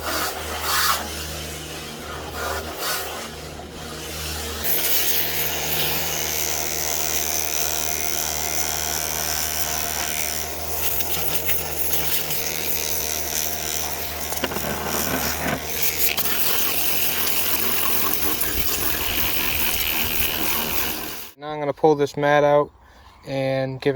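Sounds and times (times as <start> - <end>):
pressure washer humming: 0.0 - 21.4
water spray hissing: 10.7 - 21.4.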